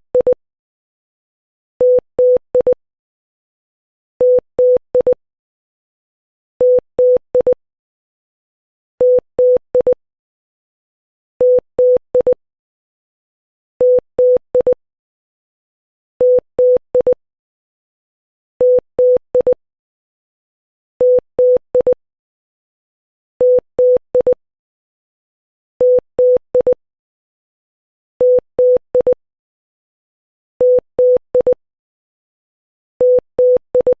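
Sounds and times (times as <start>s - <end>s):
morse code beeps: 25.8s - 26.8s, 28.2s - 29.2s, 30.6s - 31.6s, 33.0s - 34.0s.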